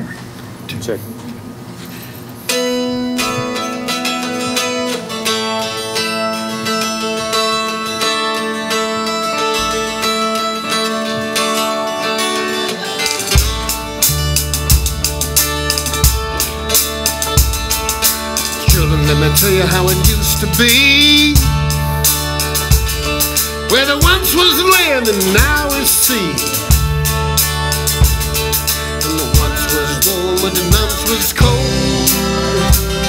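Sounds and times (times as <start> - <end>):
acoustic guitar picking melody: 1.6 - 33.0
bass guitar: 2.5 - 33.0
drums: 13.0 - 33.0.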